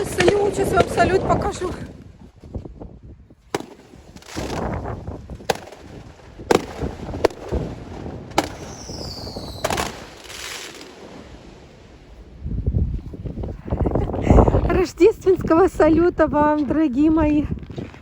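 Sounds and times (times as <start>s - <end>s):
firework bangs with echo: 3.5s - 11.3s
falling firework whistle: 8.4s - 10.9s.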